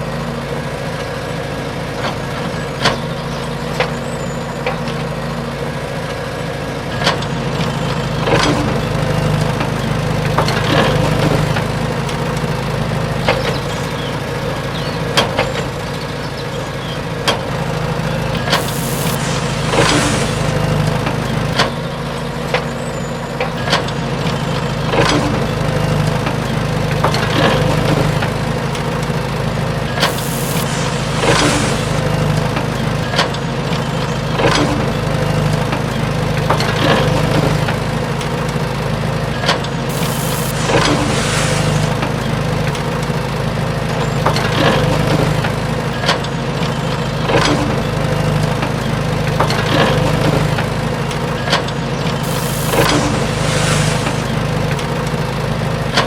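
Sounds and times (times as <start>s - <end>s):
small motor running: 17.5s - 21.6s, 24.0s - 33.1s, 37.8s - 43.0s, 49.2s - 55.2s.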